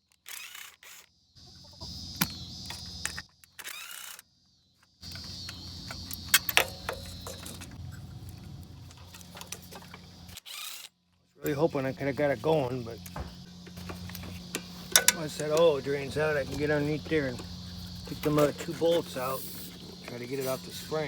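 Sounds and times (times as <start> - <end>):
crickets chirping: 0.0 - 10.4, 11.4 - 21.0
steady low hum: 5.0 - 10.4, 11.4 - 21.0
metallic clicks of hand tools: 14.0 - 15.8.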